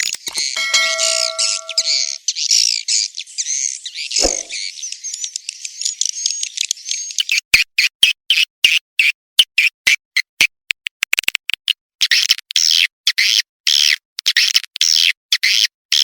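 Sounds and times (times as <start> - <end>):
steady tones: 0.6 - 2.2.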